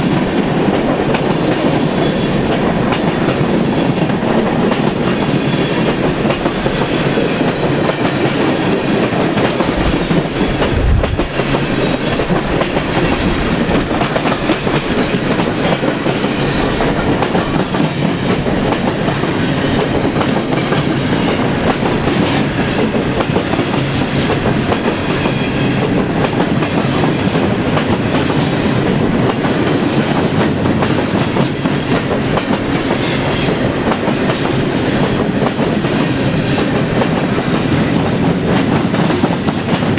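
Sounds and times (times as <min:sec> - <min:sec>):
freight train rumbling and rattling: 0:00.0 - 0:39.9.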